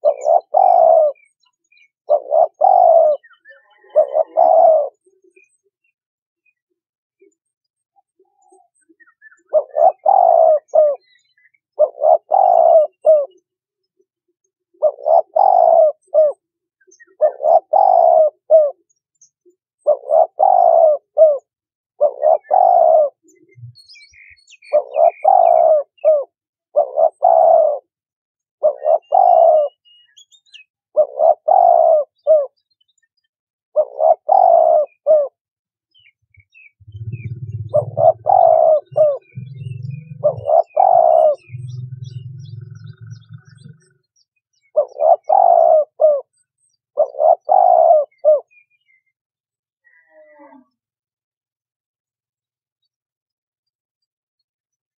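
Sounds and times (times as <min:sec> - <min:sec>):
dove cooing: 0:00.0 - 0:05.5, 0:08.2 - 0:13.4, 0:14.7 - 0:18.9, 0:19.8 - 0:23.8, 0:24.6 - 0:27.9, 0:28.6 - 0:29.8, 0:31.0 - 0:32.6, 0:33.8 - 0:35.4, 0:36.0 - 0:48.6.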